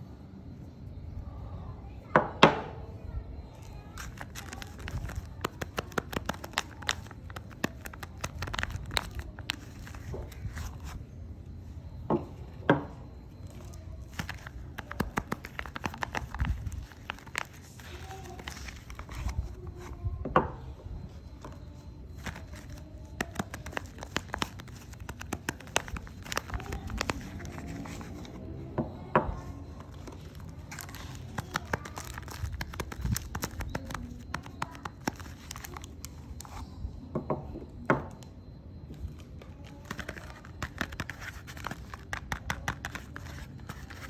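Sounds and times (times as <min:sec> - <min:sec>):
wrapper crinkling and tearing: 0:03.9 - 0:11.0, 0:14.0 - 0:19.6, 0:22.1 - 0:28.4, 0:29.9 - 0:36.6.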